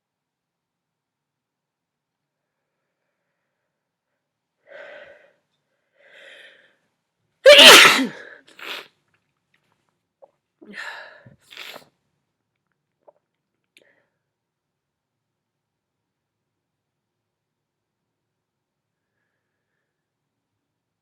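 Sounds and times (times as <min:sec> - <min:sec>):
person sneezing: 0:07.5 - 0:08.8, 0:11.4 - 0:11.8
sniffles: 0:11.5 - 0:11.8.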